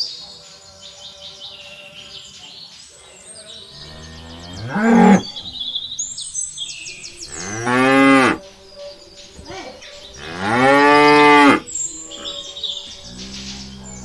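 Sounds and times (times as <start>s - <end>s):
cow mooing: 3.8s - 6.3s, 6.9s - 14.0s.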